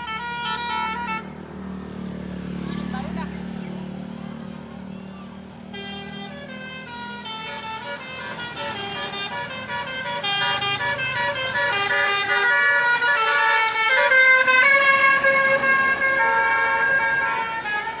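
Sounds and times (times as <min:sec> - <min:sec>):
multi-tone bus air horn melody: 0:00.0 - 0:01.5, 0:05.6 - 0:18.0.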